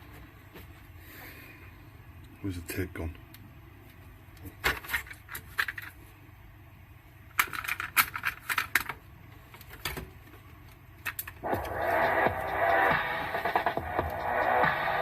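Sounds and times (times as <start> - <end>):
cassette tape plastic clicks and rattles: 7.3 - 9.0.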